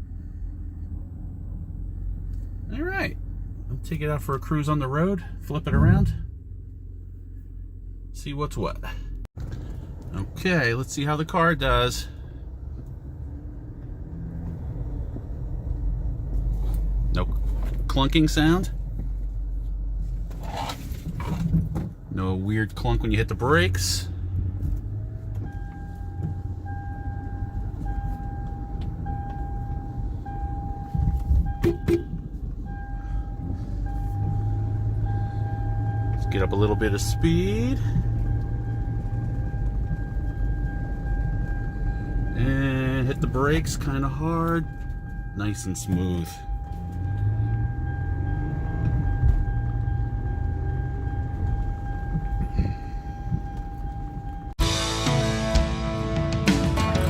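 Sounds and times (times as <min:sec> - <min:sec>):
car engine and tyre rumble: 0:00.0 - 0:57.0.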